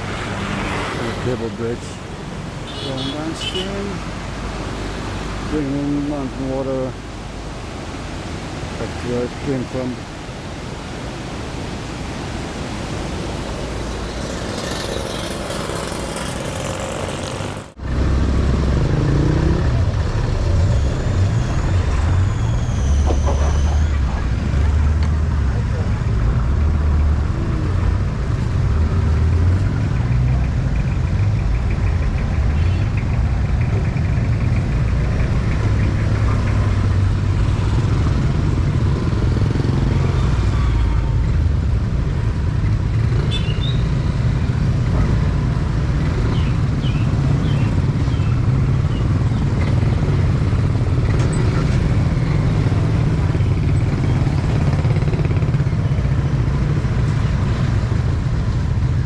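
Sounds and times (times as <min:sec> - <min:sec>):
road noise: 0:00.0 - 0:59.0
motorcycle engine rumble: 0:41.0 - 0:59.0.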